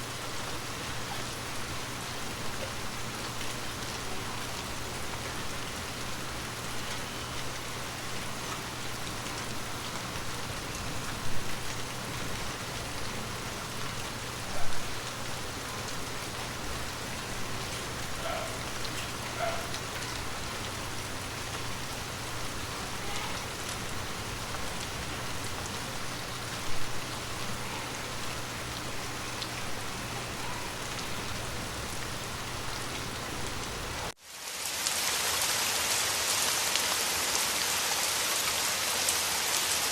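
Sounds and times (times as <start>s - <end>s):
steady rain on a surface: 0.0s - 39.9s.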